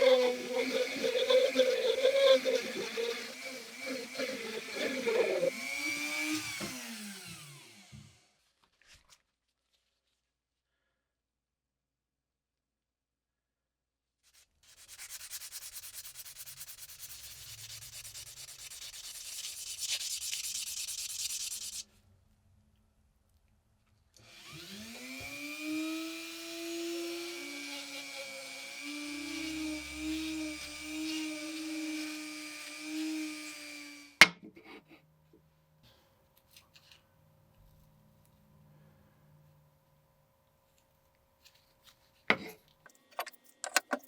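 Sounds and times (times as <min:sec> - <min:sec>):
hand sanding: 0:00.0 - 0:06.9, 0:14.3 - 0:21.9
electric rotary tool running: 0:00.0 - 0:08.4, 0:24.2 - 0:34.2.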